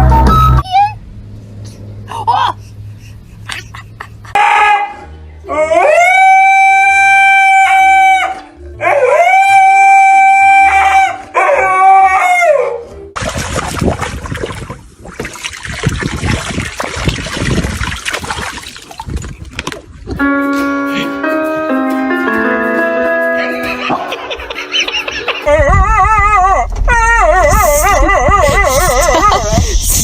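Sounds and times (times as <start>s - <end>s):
dog howling: 4.4s - 12.8s, 25.5s - 28.9s
quiet background music: 4.9s - 13.2s
piano music: 20.2s - 25.4s.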